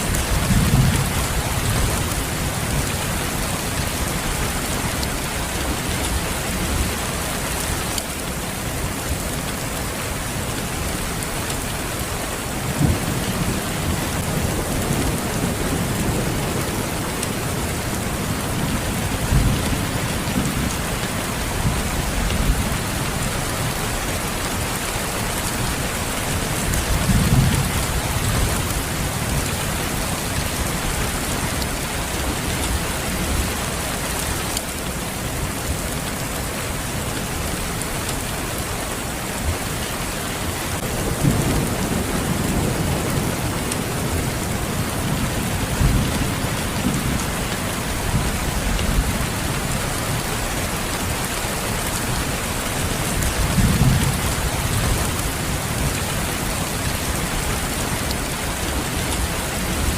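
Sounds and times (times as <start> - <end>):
low rumbles of thunder: 0.0 - 4.8, 40.8 - 50.2
steady rain falling: 0.0 - 59.9.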